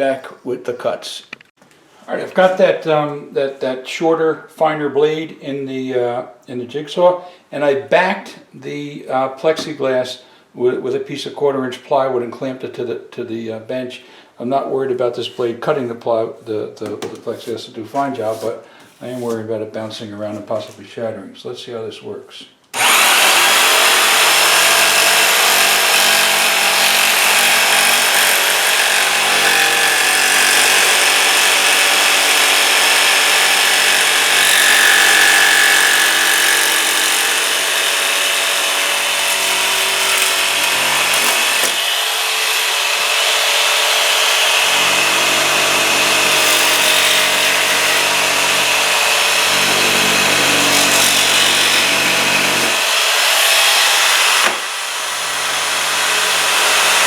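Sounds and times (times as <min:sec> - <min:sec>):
jigsaw cutting plastic: 0:22.8 - 0:57.0.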